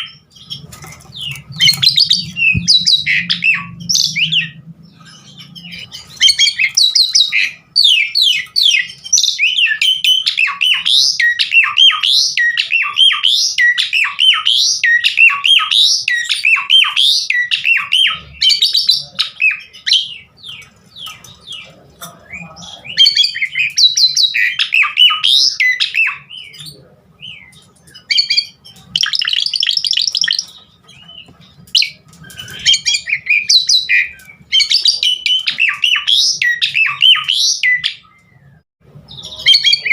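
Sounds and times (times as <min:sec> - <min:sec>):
starling singing: 0:00.0 - 0:39.9.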